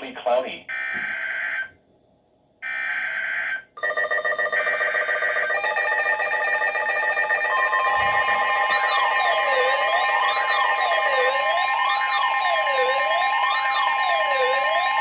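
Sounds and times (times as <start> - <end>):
pulsing multi-tone alert signal: 3.8 - 15.0.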